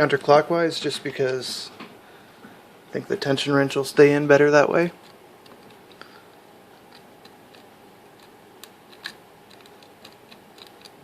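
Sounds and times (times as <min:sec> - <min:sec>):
faint air conditioner hum: 0:00.0 - 0:11.0
lock pick clicking against pins: 0:06.9 - 0:11.0.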